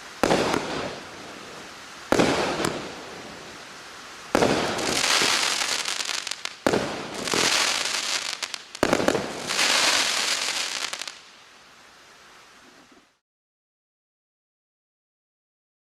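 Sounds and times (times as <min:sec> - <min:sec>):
firework crackling hiss: 0:00.0 - 0:13.2
firework bangs: 0:00.2 - 0:03.5, 0:04.3 - 0:11.2.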